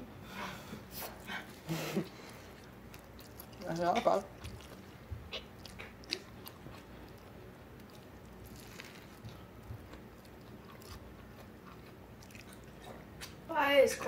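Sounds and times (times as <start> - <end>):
wet chewing clicks: 1.4 - 13.4
small crunches: 5.6 - 13.4.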